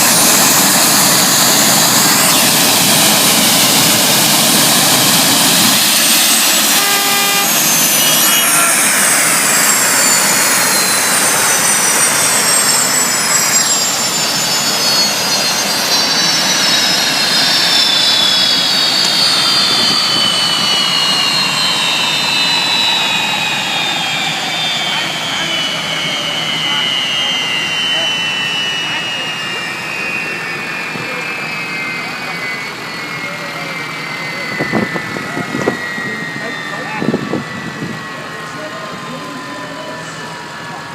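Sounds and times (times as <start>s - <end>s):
gas turbine engines rushing: 0.0s - 40.9s
short horn-like tone: 6.3s - 10.9s.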